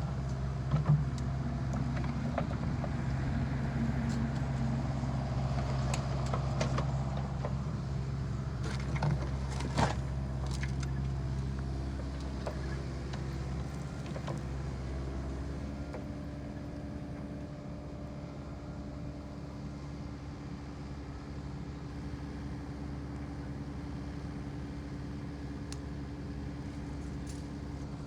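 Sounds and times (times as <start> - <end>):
excavator diesel engine running: 0.0 - 19.7.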